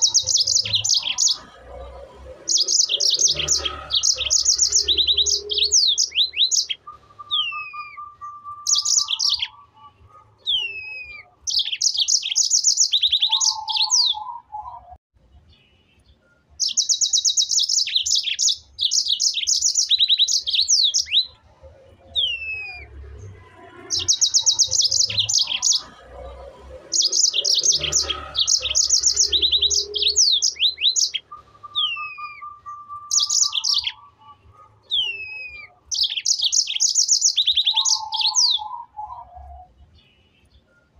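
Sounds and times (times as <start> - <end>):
bird chirping trills: 0.0 - 40.9
bird whistles sliding downward: 27.0 - 34.0.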